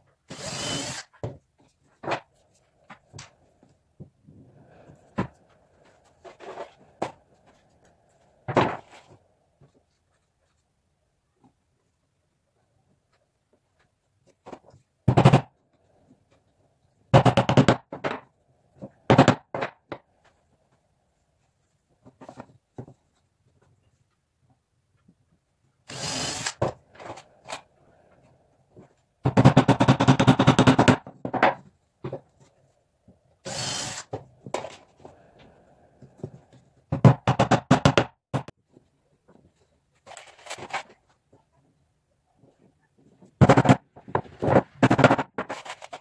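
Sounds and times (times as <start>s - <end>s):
power tool on wood: 0.3s - 1.1s, 25.9s - 27.2s, 33.4s - 34.2s.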